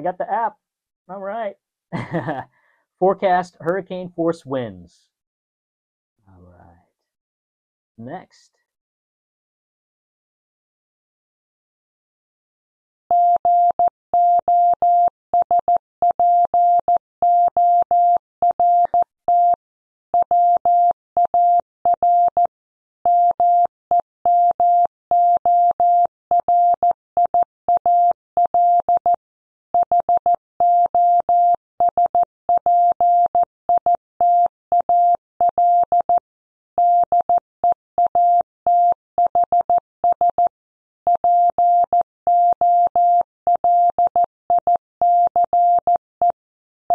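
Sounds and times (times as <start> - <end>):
morse code beeps: 38.1 - 40.5, 41.1 - 46.0.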